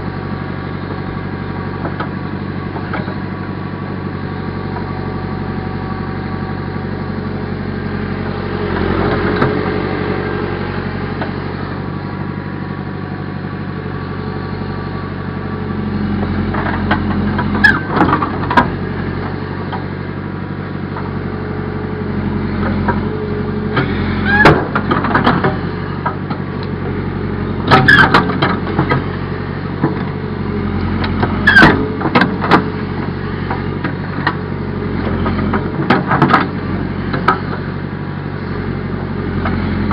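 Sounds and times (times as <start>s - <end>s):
backhoe engine running: 0.0s - 39.9s.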